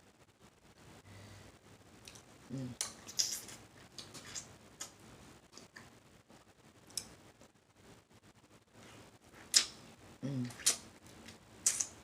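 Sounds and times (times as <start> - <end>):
faint chewing: 2.0 - 5.9.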